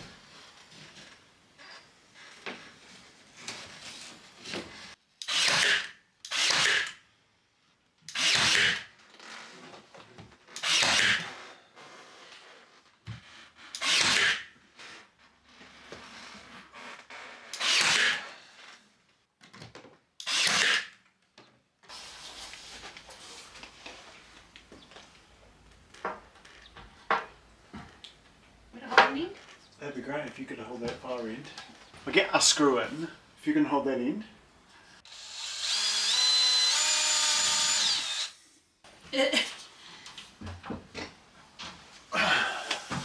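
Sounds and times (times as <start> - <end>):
hand tool rubbing on wood: 21.9 - 25.5.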